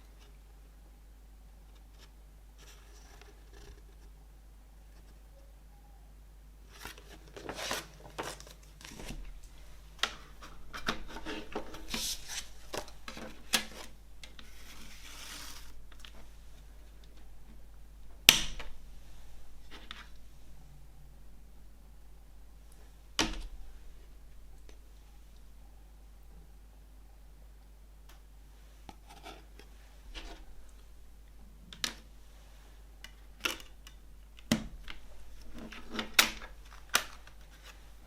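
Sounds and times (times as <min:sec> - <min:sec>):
paper and plastic rustling: 0:06.7 - 0:17.2, 0:34.8 - 0:38.0
sliding rub: 0:10.4 - 0:16.6.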